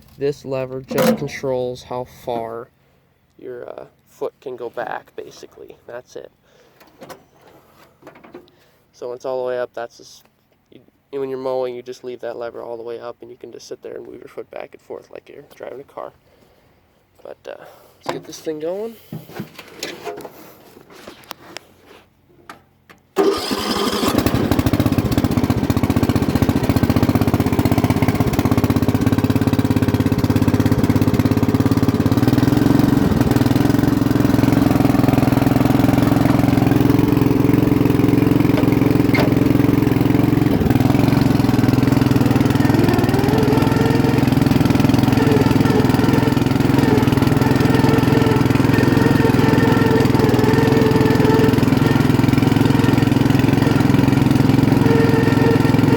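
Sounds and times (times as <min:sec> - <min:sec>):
lawn mower engine running: 0:00.8 - 0:01.6, 0:23.2 - 0:55.9.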